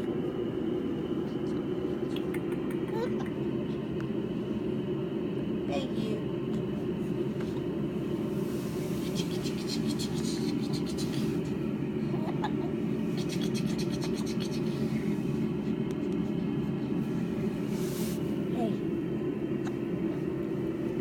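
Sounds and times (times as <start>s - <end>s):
low background rumble: 0.0s - 21.0s.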